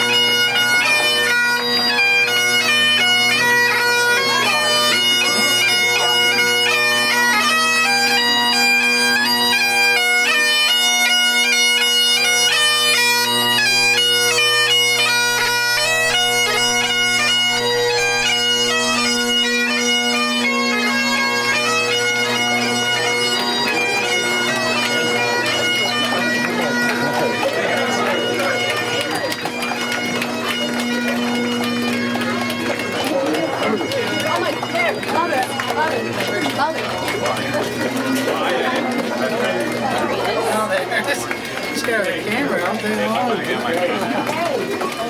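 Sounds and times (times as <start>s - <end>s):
bagpipes playing a tune: 0.0s - 45.0s.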